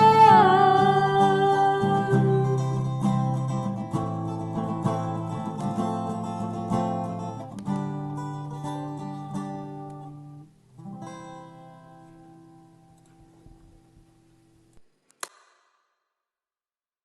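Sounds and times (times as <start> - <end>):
acoustic guitar strumming: 0.0 - 13.3.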